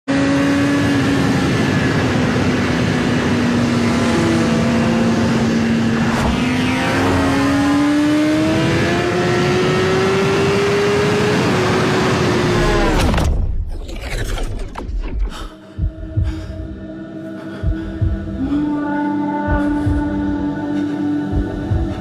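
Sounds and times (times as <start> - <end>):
engine running: 0.1 - 17.0.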